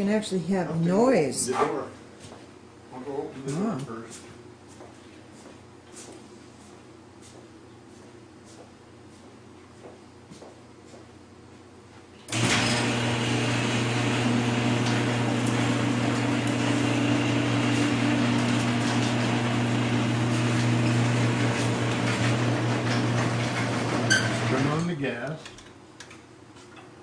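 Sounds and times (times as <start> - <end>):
garage door opener motor hum: 12.2 - 26.2.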